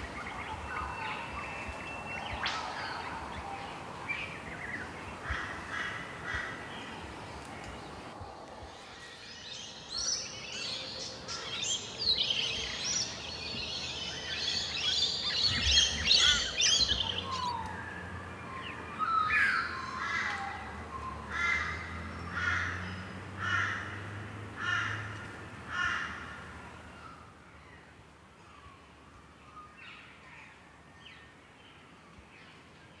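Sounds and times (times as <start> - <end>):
birds chirping: 0.0 - 23.3
loud repeated bird calls: 9.1 - 24.0.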